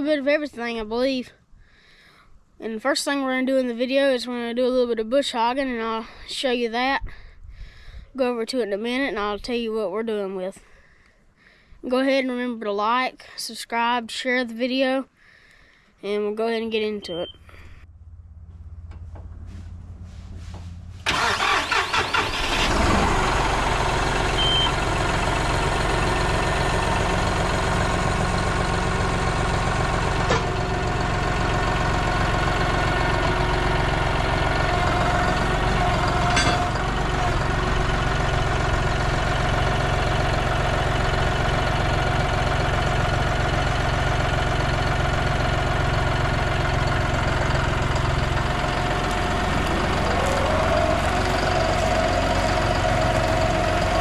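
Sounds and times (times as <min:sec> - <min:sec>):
tractor diesel engine starting: 0:17.1 - 0:54.0.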